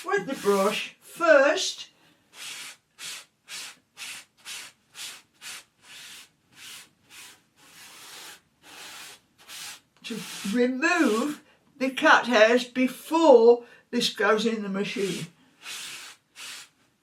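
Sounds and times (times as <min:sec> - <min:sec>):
brush scraping over fabric: 0:00.0 - 0:00.9, 0:02.3 - 0:11.4.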